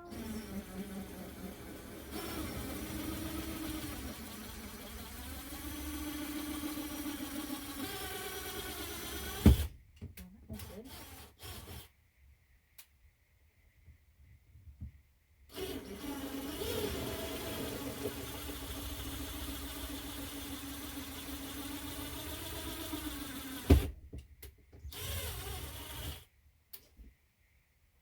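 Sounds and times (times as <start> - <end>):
power drill boring through tile: 0.0 - 9.7, 10.6 - 11.9, 15.5 - 23.9, 24.9 - 26.3.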